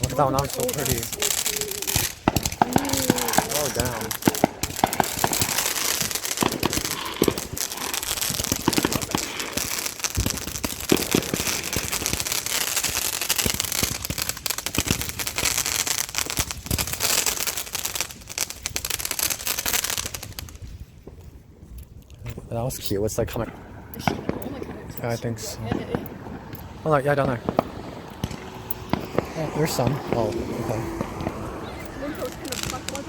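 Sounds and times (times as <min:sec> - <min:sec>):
fireworks crackling and banging: 0:00.0 - 0:33.0.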